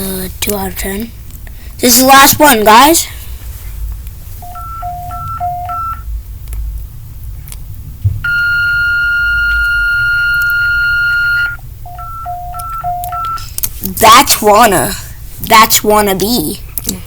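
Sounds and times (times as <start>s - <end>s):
low hum: 3.4s - 13.7s
steady high alarm tone: 4.4s - 6.0s, 8.2s - 13.4s
alternating low-high beeps: 4.4s - 6.1s, 8.2s - 13.4s.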